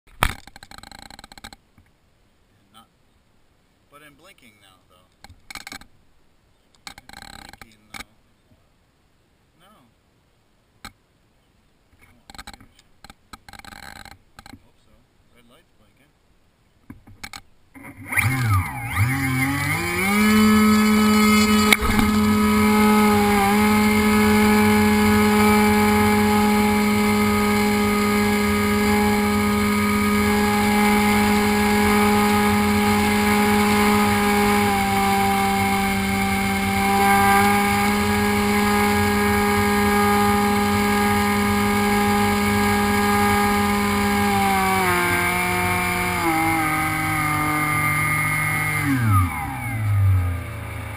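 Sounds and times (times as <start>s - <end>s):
electric motor and propeller whine: 17.8s - 50.9s
sharp knock: 21.7s - 22.1s.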